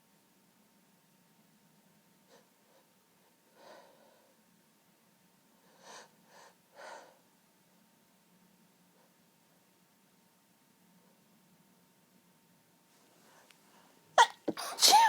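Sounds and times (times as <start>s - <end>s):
muffled sneezes: 14.2s - 15.0s.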